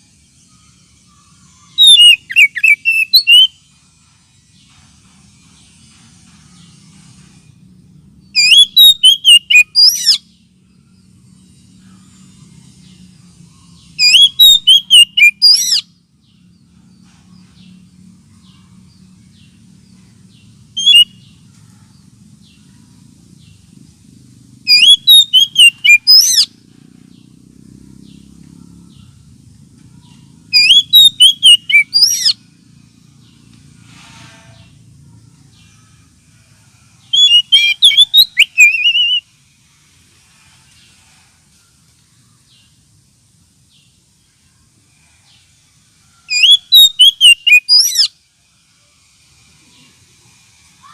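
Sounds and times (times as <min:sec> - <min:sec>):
bird song whistled phrases: 0:01.7 - 0:03.6, 0:08.4 - 0:10.2, 0:14.0 - 0:15.9, 0:20.8 - 0:21.2, 0:24.7 - 0:26.5, 0:30.6 - 0:32.4, 0:37.1 - 0:39.2, 0:46.3 - 0:48.1.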